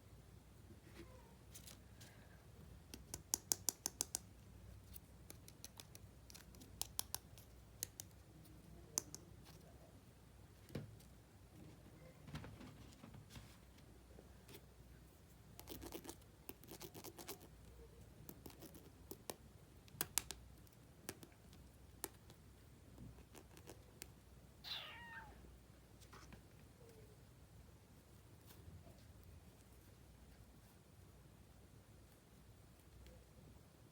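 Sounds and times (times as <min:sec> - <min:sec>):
plastic toys clicking and tapping: 0:02.9 - 0:04.3.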